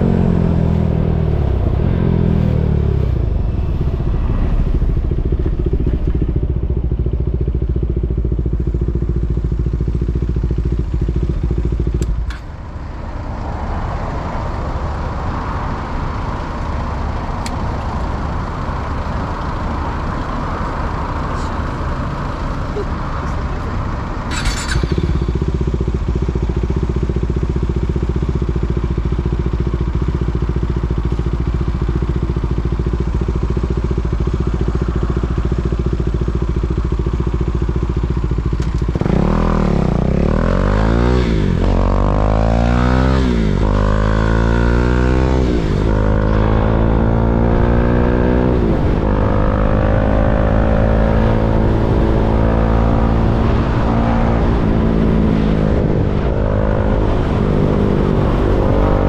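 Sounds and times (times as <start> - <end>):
motorcycle accelerating: 0.0 - 59.0
motorcycle engine idling: 2.7 - 40.4.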